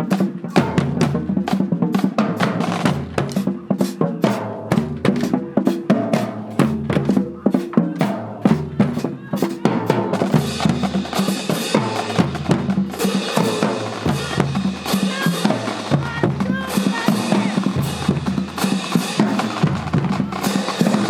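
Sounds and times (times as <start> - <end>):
bass drum beats: 4.2 - 21.0.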